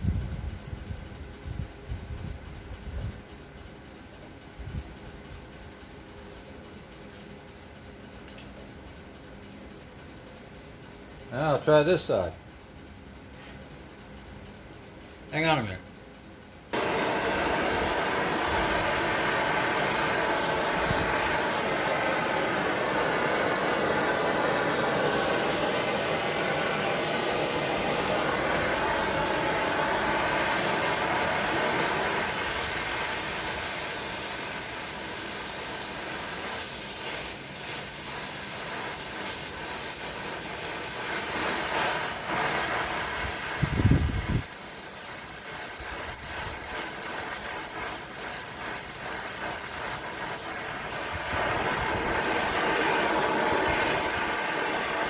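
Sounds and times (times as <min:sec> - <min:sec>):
gas torch flame hissing: 0:16.7 - 0:55.0.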